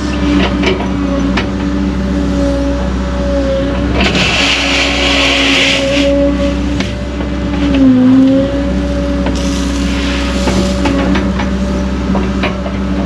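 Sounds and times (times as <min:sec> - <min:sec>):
excavator diesel engine running: 0:06.1 - 0:13.0
rush of hiss: 0:09.4 - 0:11.1.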